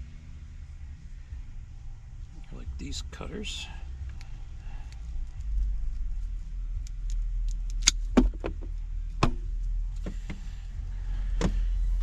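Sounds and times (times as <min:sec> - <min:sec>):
low rumble: 0:00.0 - 0:12.0
cable cutters clicking and snapping: 0:06.8 - 0:08.1.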